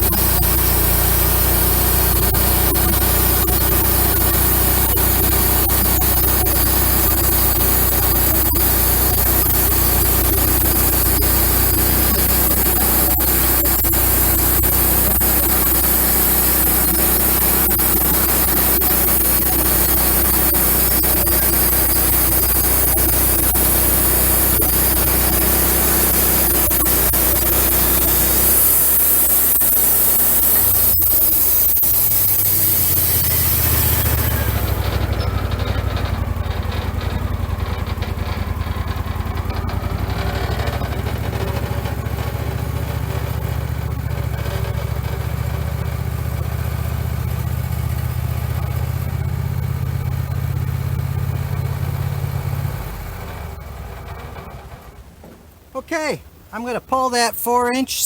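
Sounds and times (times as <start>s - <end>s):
sawmill engine humming: 0.0s - 45.7s.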